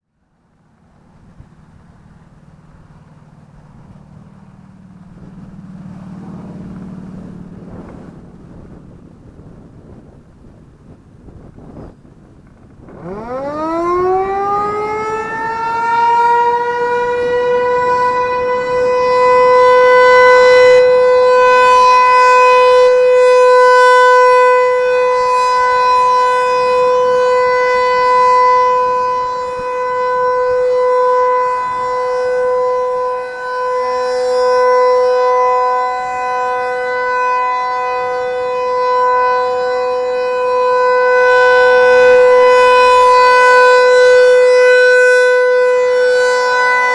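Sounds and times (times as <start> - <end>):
warning siren winding up: 12.8 - 46.9.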